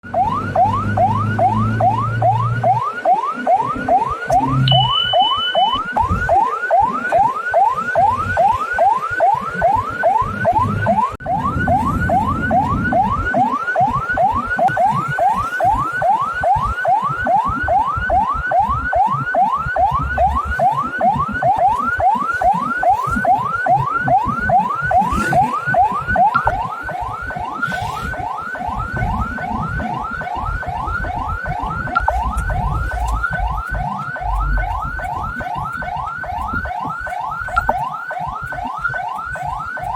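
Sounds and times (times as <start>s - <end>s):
siren yelping: 0.0s - 39.9s
low rumble: 30.4s - 37.7s.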